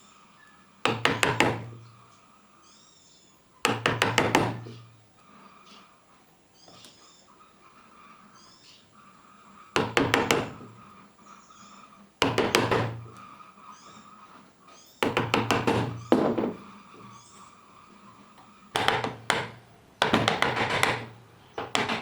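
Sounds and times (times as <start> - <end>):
hand tool knocking on wood: 0.8 - 1.8, 3.6 - 4.8, 9.8 - 10.8, 12.2 - 13.2, 15.0 - 16.7, 18.8 - 22.0.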